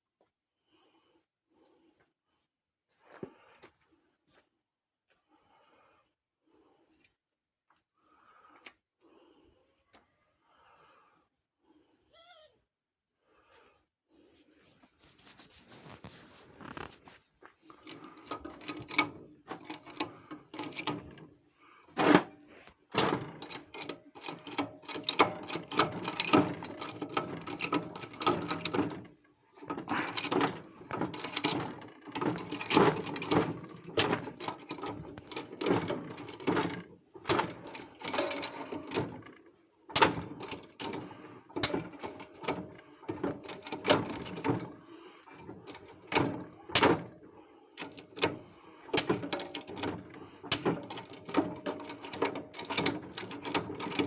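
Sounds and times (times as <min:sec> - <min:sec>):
metal tools clicking and rattling: 0:17.8 - 0:21.2, 0:22.0 - 0:47.1, 0:47.8 - 0:54.0.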